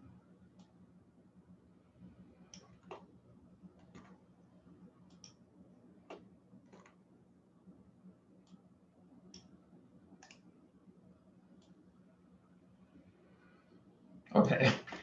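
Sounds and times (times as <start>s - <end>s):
faint computer mouse clicks: 5.1s - 5.4s, 10.2s - 10.5s.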